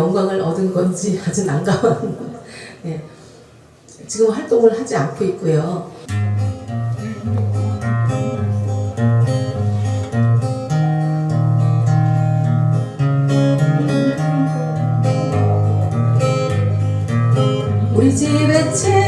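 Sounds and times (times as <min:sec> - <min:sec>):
acoustic guitar playing: 0:06.1 - 0:19.0.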